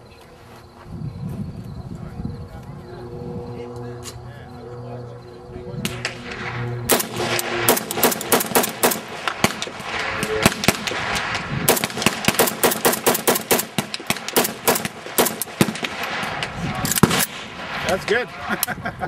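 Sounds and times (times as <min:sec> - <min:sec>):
rapid rifle shots: 0:05.8 - 0:18.2.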